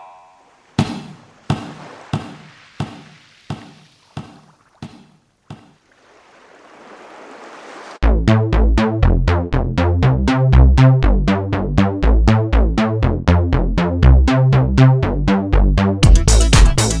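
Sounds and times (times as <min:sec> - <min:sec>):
electronic music with drum machine: 0:16.0 - 0:17.0.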